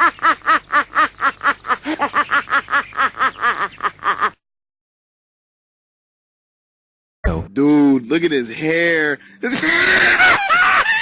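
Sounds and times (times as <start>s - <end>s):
man laughing: 1.0s - 4.4s, 9.4s - 11.0s.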